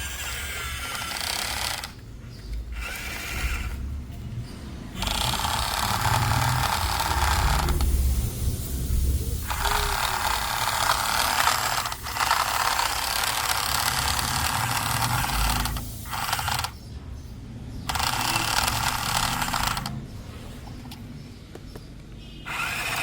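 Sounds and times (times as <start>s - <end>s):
small motor whirring: 0.0s - 3.9s, 5.0s - 8.2s, 9.3s - 16.8s, 17.9s - 20.0s, 22.4s - 23.0s.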